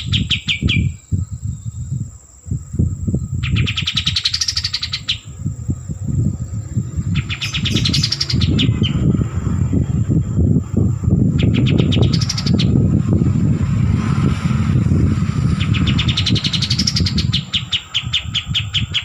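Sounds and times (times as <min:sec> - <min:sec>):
songbird singing rattling phrases: 0:00.0 - 0:19.0
low irregular rumble: 0:05.0 - 0:18.3.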